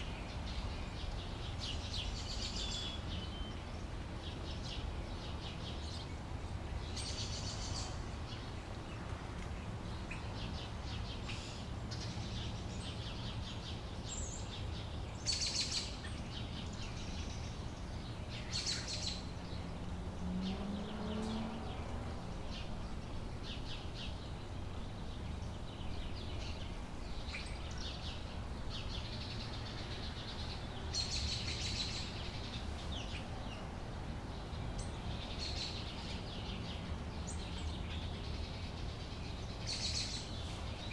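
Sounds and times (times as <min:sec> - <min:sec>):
birds chirping and calling: 0:09.9 - 0:40.9.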